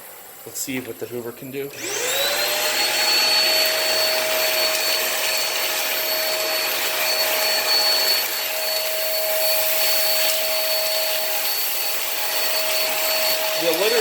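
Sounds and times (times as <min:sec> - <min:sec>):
vacuum cleaner motor whine: 0:00.0 - 0:14.0.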